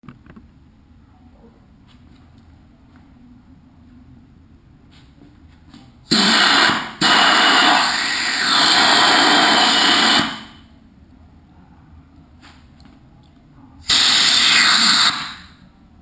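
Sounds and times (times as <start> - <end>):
compressed air hissing: 6.1 - 10.6, 13.8 - 15.6.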